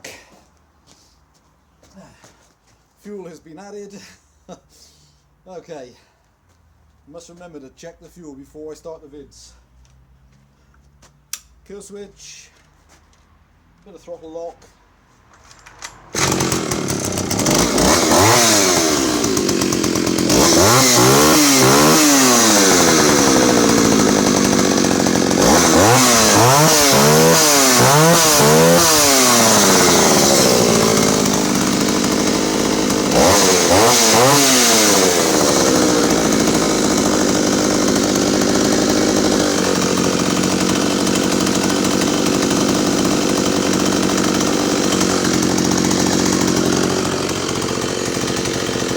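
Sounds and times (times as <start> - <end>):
chainsaw engine revving: 15.9 - 48.9.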